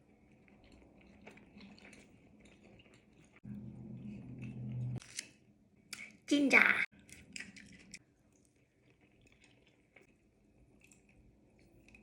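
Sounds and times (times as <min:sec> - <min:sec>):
chewing and mouth clicks: 0:00.2 - 0:03.4, 0:07.1 - 0:12.0.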